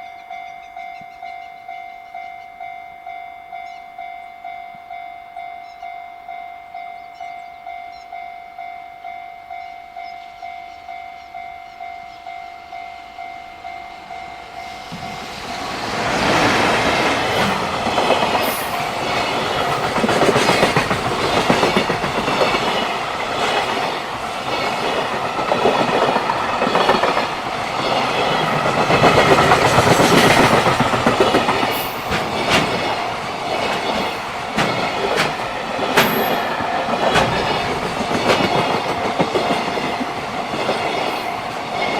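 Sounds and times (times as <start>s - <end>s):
level-crossing warning bell: 0.0s - 41.9s
train wheels clattering over joints: 14.8s - 41.9s.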